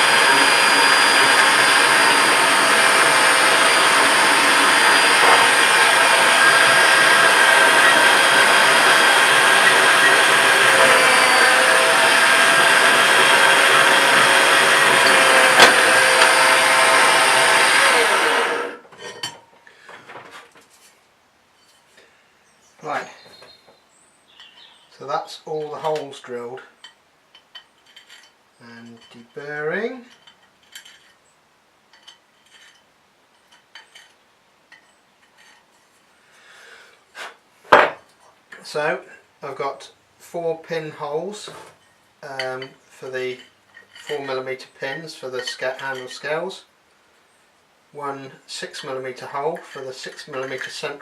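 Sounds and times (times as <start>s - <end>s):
drill press motor whine: 0.0s - 18.9s
metal scraping and clicking: 30.1s - 31.2s, 31.9s - 35.9s.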